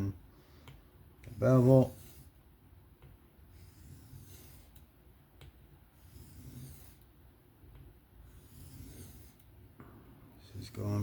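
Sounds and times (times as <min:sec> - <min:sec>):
knife scraping on sharpening plate: 0:08.4 - 0:09.4.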